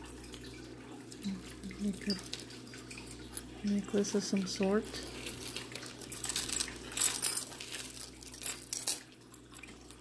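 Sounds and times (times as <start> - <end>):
metal jewelry clinking: 1.3 - 3.5, 4.7 - 10.0.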